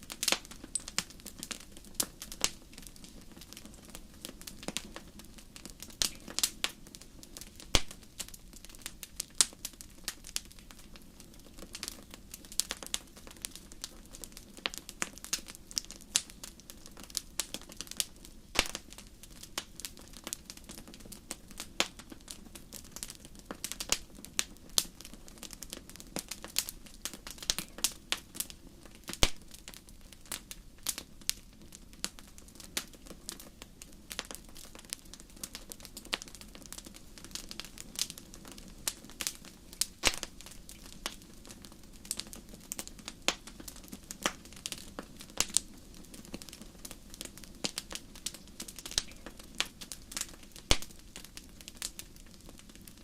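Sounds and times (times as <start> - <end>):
soft low hiss: 0.0 - 53.0
wood fire crackling and popping: 0.0 - 53.0.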